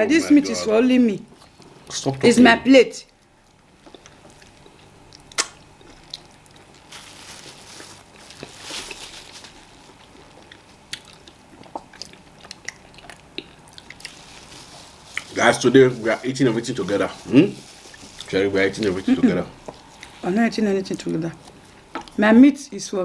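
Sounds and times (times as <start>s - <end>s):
chewing and mouth clicks: 3.1s - 6.9s, 10.0s - 14.2s, 19.6s - 20.2s.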